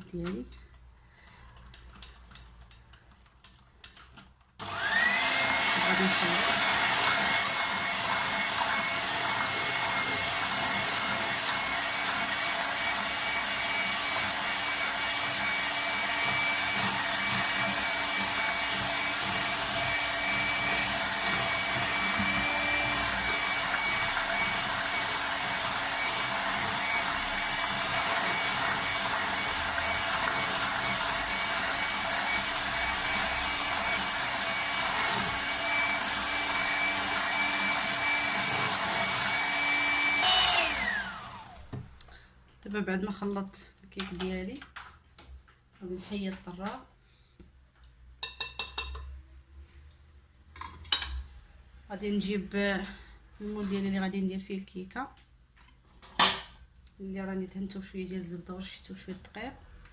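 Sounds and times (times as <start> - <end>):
electric mixer whining: 4.6 - 41.9.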